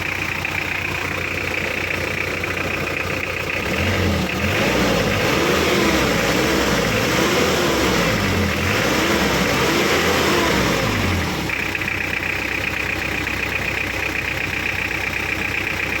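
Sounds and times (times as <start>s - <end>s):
car engine revving and idling: 0.0s - 16.0s.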